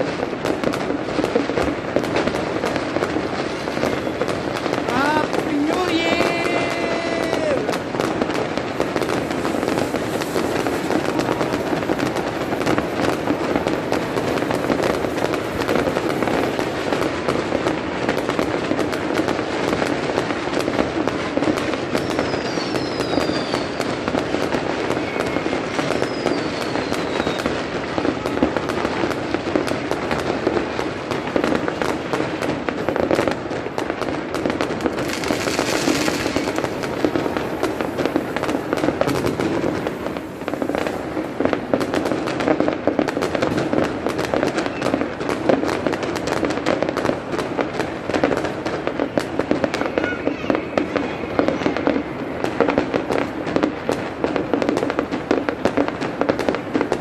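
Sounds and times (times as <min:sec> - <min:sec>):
fireworks crackling and banging: 0:00.0 - 0:57.0
falling firework whistles: 0:03.4 - 0:16.8, 0:21.9 - 0:27.8, 0:34.9 - 0:41.5.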